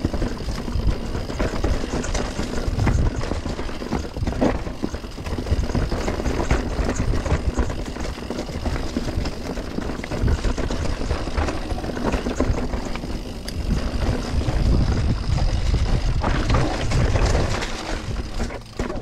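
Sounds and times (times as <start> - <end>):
bike rattling: 0.0 - 19.0
tyres rolling over dirt: 0.0 - 19.0
wind rumble on microphone: 0.0 - 19.0.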